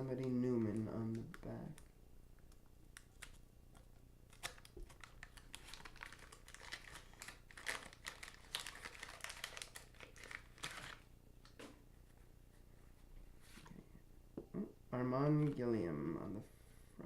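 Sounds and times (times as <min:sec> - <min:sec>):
wax paper wrapper crinkling: 0:04.3 - 0:11.1.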